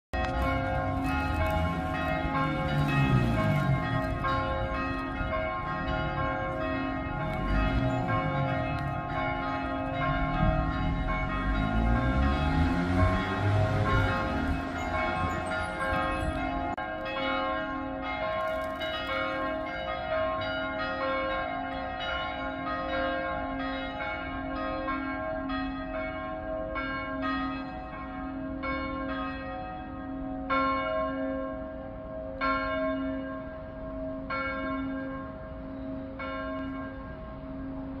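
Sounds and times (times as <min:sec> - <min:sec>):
church bells ringing: 0:00.1 - 0:38.0.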